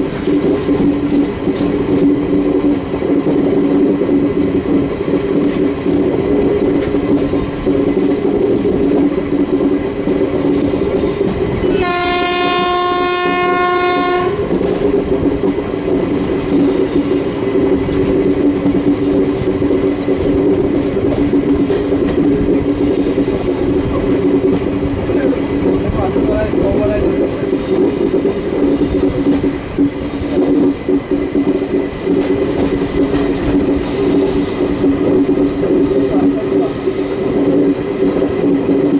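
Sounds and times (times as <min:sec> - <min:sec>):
train running clickety-clack: 0:00.0 - 0:38.9
locomotive horn blast: 0:11.7 - 0:14.4.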